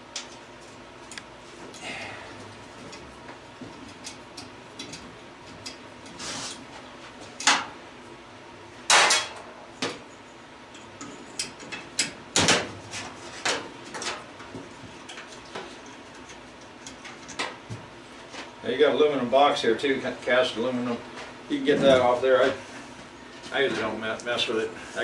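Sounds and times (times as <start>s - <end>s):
metal stove parts clanking: 8.9s - 9.4s.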